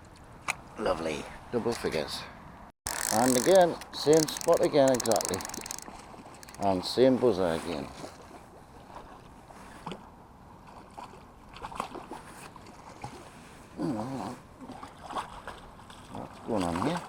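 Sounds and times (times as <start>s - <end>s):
wind: 0.0s - 17.0s
light clicks and knocks: 2.9s - 5.8s.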